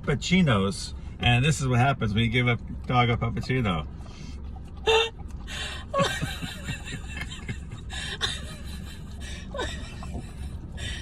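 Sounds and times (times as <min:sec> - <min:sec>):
steady low rumble: 0:00.0 - 0:11.0
person chuckling: 0:05.6 - 0:11.0.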